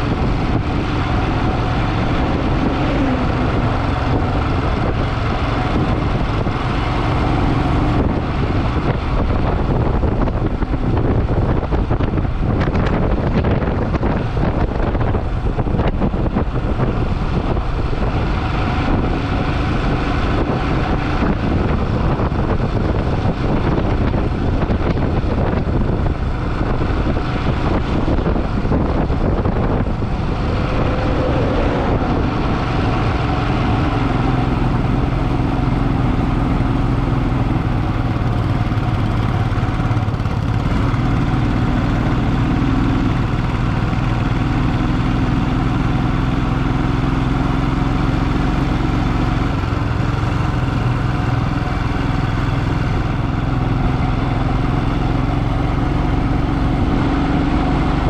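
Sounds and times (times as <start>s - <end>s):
motorcycle engine running: 0.0s - 58.0s
road noise: 0.0s - 58.0s.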